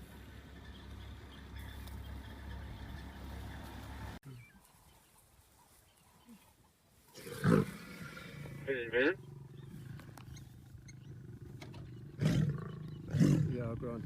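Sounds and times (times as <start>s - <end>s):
lion grunt: 10.8s - 14.0s.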